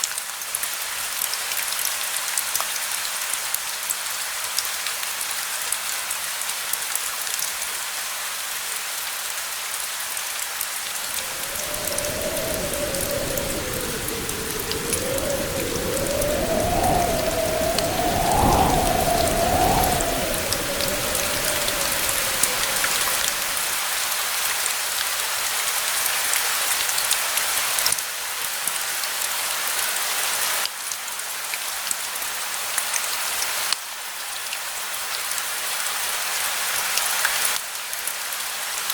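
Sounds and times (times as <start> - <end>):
rain pattering: 10.8 - 24.1
distant thunder rumble: 11.0 - 23.8.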